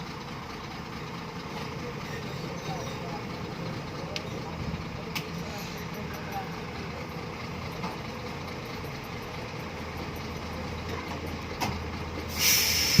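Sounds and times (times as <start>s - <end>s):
diesel engine idling: 0.0s - 13.0s
burst of hiss: 12.3s - 13.0s.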